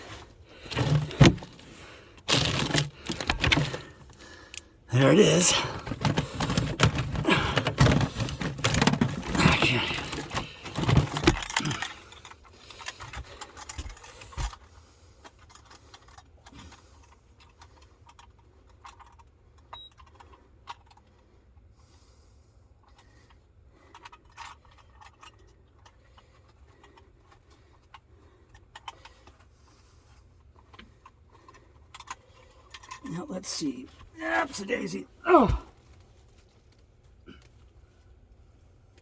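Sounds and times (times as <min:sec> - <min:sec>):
fishing gear clicking and rustling: 0:00.0 - 0:21.7, 0:22.8 - 0:37.8.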